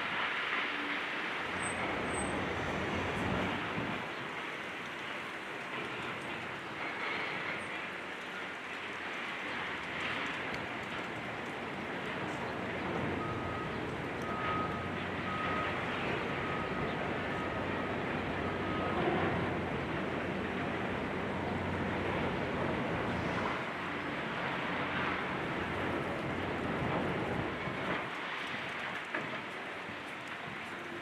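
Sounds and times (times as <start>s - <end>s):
traffic: 0.0s - 31.0s
heavy machinery rumble: 1.4s - 31.0s
backup alarm beeping: 13.2s - 15.8s.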